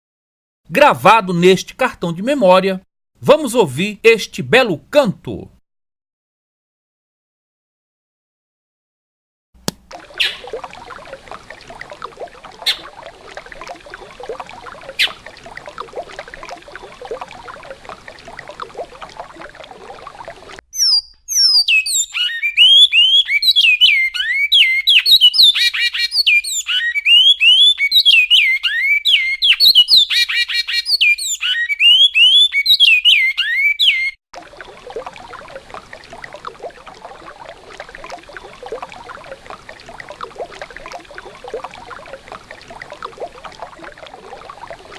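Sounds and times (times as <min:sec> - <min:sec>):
river water flowing: 0:09.7 - 0:20.6, 0:34.4 - 0:44.9
bird whistling song: 0:12.6 - 0:12.8, 0:15.0 - 0:15.2, 0:20.7 - 0:34.2.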